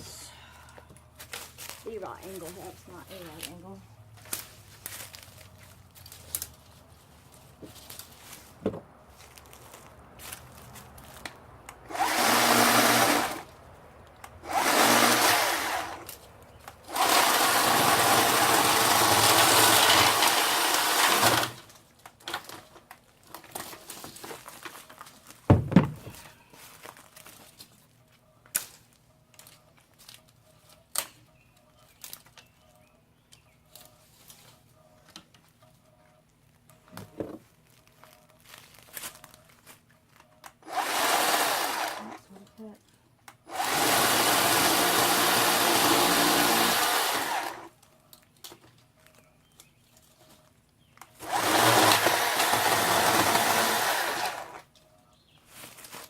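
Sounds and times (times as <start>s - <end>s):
electric chainsaw cutting branches: 11.9s - 13.5s, 14.4s - 16.2s, 16.8s - 21.8s, 40.6s - 42.3s, 43.5s - 47.7s, 51.2s - 54.7s.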